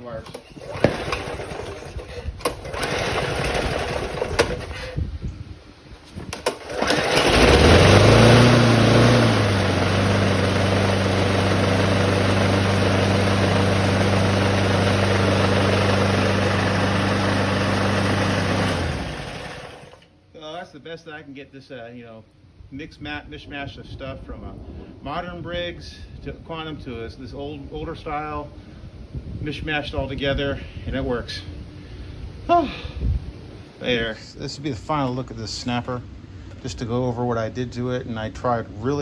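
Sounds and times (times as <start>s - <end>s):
lawn mower engine running: 0.0s - 5.2s, 6.0s - 20.2s.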